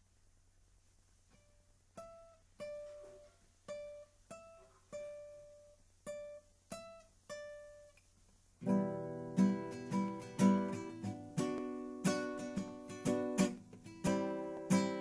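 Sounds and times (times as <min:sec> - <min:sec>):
plucked string instrument notes: 0:08.6 - 0:15.0.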